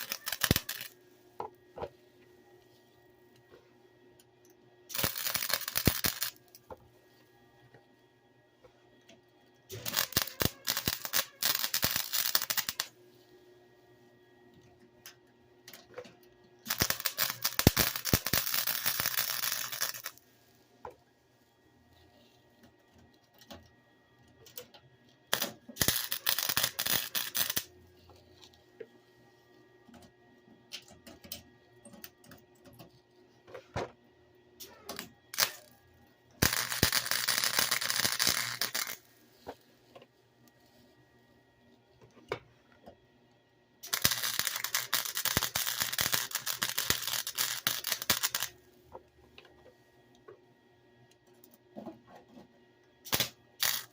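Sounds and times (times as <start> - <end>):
welding crackling: 0.0 - 1.0, 4.9 - 6.6, 9.7 - 12.9, 16.6 - 20.2, 25.3 - 27.7, 35.3 - 35.7, 36.4 - 39.1, 43.8 - 48.5, 53.1 - 53.9.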